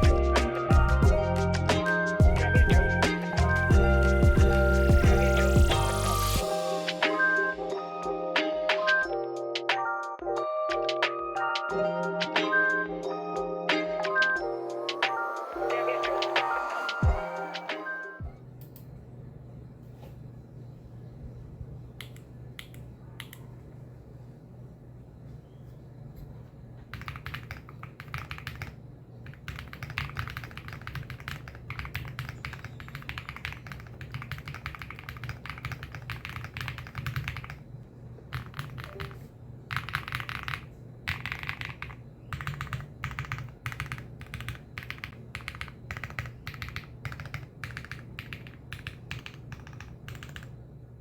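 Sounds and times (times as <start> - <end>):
keyboard typing: 26.9 - 37.7, 38.3 - 50.6.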